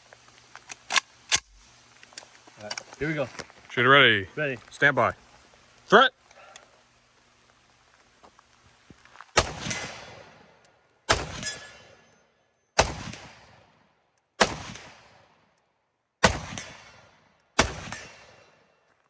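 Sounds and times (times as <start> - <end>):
rifle shots: 9.4 - 12.1, 12.8 - 13.8, 14.4 - 15.4, 16.2 - 18.7.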